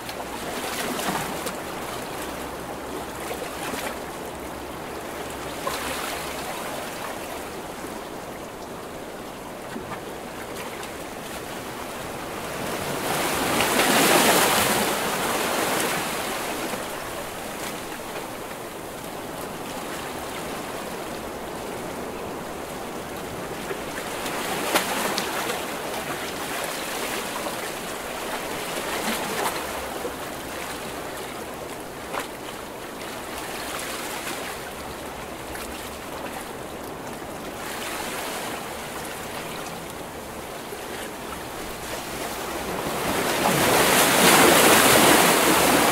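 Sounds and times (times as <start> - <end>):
ocean waves crashing: 11.6 - 18.8, 37.6 - 45.9.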